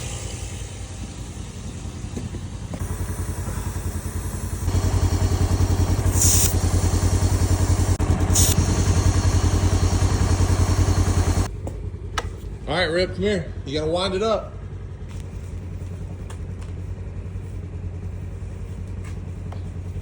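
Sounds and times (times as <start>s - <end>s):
air compressor motor running: 0.0s - 11.6s
short air hisses: 2.8s - 11.5s.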